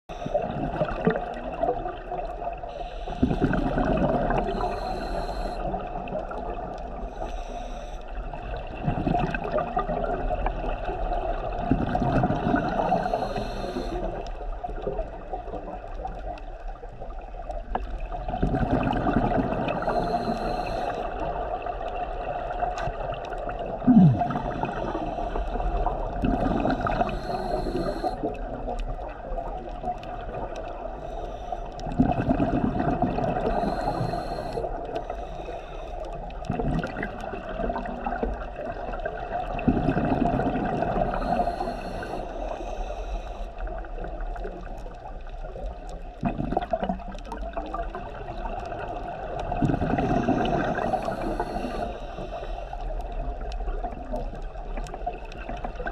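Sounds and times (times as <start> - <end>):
exhaled bubbles gurgling: 0.1 - 55.9
regulator hissing inhalation: 2.7 - 3.5, 4.4 - 5.8, 12.8 - 14.2, 19.8 - 21.2, 26.4 - 28.3, 33.4 - 36.0, 41.0 - 43.5, 50.1 - 52.7.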